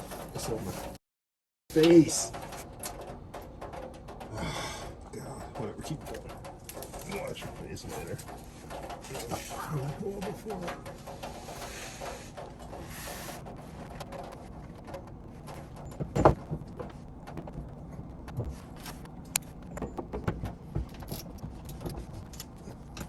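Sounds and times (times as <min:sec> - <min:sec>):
metal parts clinking and knocking: 0:19.7 - 0:23.0.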